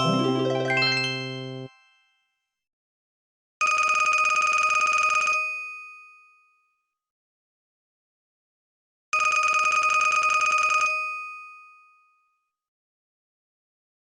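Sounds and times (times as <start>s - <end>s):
phone ringtone melody: 0.0s - 1.8s
bell-like ringing tone: 0.0s - 2.3s.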